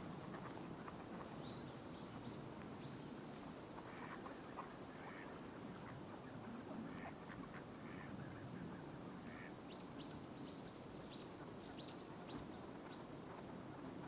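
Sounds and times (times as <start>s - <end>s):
low background noise: 0.0s - 14.0s.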